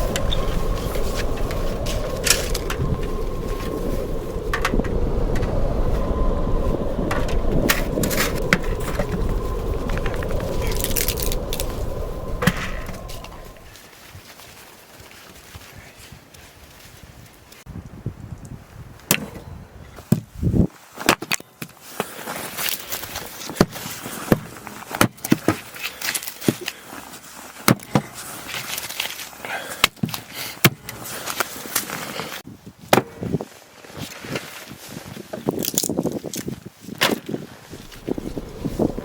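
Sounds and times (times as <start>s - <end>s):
rough scraping: 0.0s - 13.8s.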